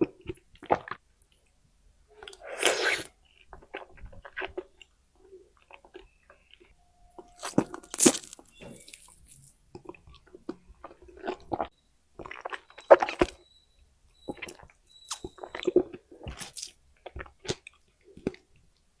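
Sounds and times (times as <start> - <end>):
chewing popping boba: 2.3 - 13.4.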